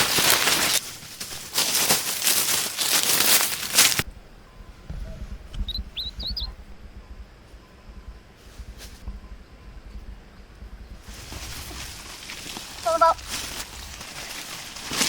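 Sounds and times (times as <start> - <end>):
dense rustling and crinkling: 0.0 - 5.8, 10.9 - 15.0
low rumble: 4.0 - 15.0.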